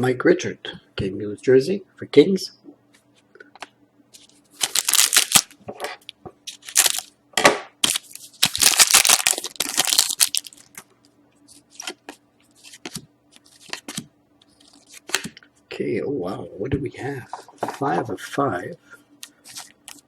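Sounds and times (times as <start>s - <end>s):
card pack wrapper crinkling: 4.2s - 5.6s, 6.5s - 7.1s, 7.8s - 10.8s, 19.4s - 20.0s.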